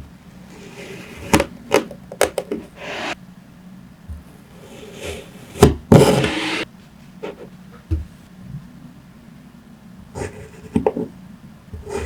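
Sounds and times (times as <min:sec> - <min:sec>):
gritty sand scrape: 0:02.7 - 0:03.2.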